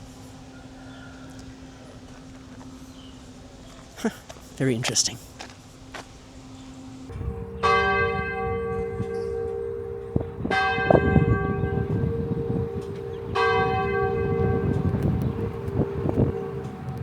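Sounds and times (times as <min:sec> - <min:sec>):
large bell tolling: 0:06.7 - 0:17.0.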